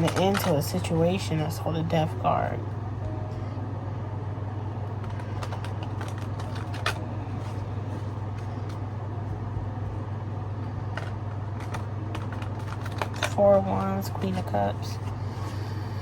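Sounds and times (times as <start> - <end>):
steady low hum: 0.0 - 16.0
cards clicking and tapping: 5.0 - 8.9, 10.9 - 15.2.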